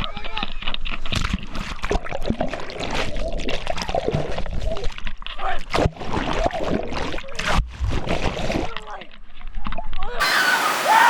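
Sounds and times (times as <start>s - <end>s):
creek water rushing over rocks: 10.2s - 11.0s
voices calling out: 10.2s - 11.0s.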